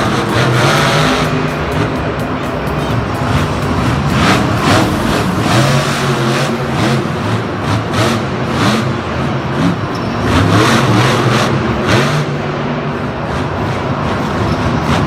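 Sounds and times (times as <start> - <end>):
engine revving: 0.0 - 15.0.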